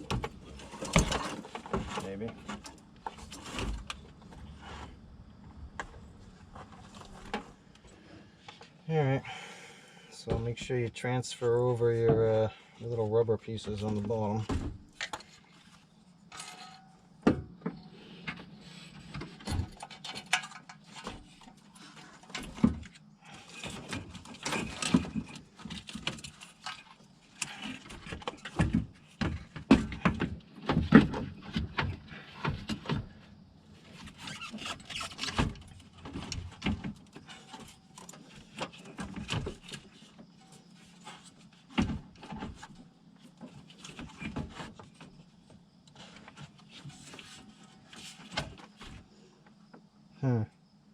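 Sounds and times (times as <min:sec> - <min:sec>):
clicks knocks and scraping: 0:00.0 - 0:08.7, 0:13.5 - 0:33.1, 0:33.8 - 0:49.0.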